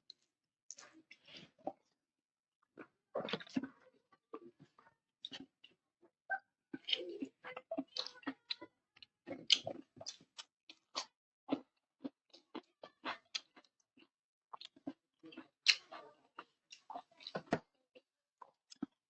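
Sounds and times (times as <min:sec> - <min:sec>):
person chewing food: 0:06.7 - 0:19.0.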